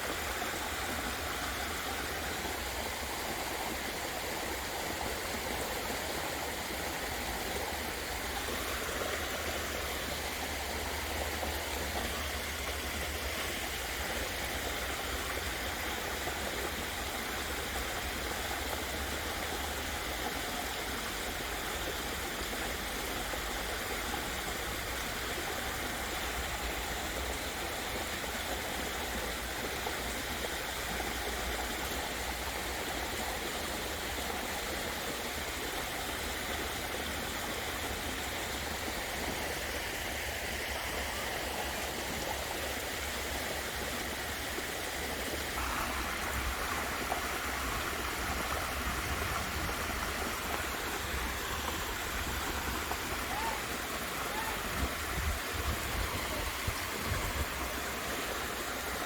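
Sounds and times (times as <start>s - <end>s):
waterfall rushing: 37.8s - 59.0s.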